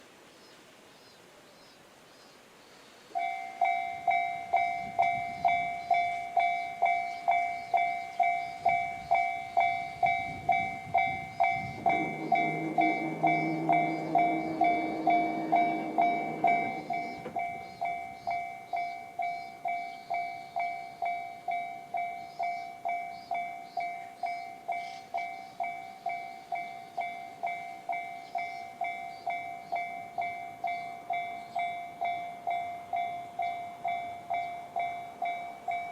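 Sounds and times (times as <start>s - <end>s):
electric train passing: 0.0s - 35.9s
level crossing electronic bell: 3.2s - 35.9s.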